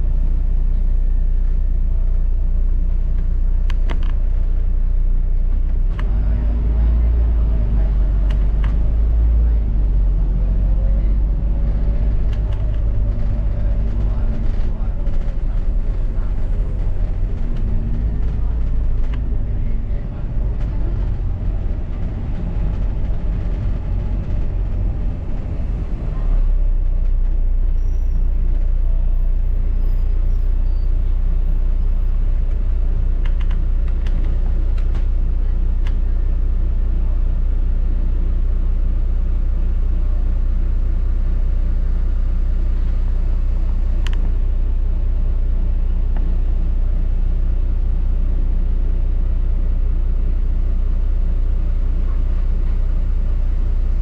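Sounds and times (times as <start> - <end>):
bus engine rumble: 0.0 - 54.0.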